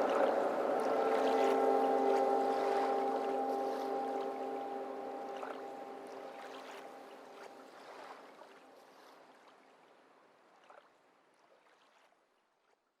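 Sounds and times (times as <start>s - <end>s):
sustained music chord: 0.0s - 7.9s.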